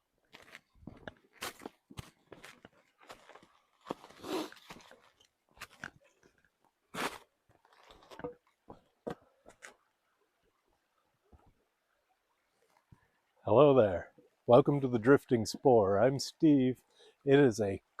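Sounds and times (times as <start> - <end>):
footsteps crunching on forest floor: 0.3 - 6.3, 6.9 - 8.8.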